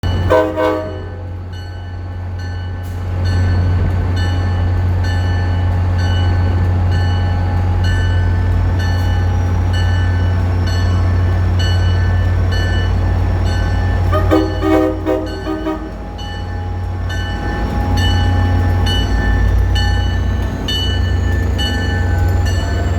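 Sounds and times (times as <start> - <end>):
diesel locomotive rumbling: 0.0 - 22.9
locomotive bell ringing: 0.0 - 22.9
locomotive horn: 0.2 - 1.5, 14.0 - 16.2.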